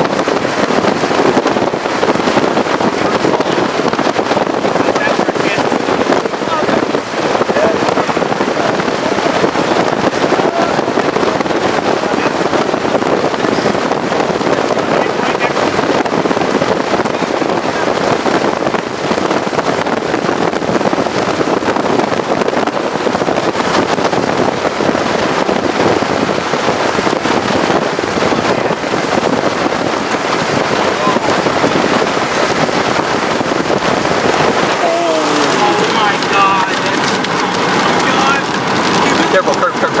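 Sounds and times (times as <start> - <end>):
wind buffeting microphone: 0.0 - 40.0
crackling: 25.8 - 40.0.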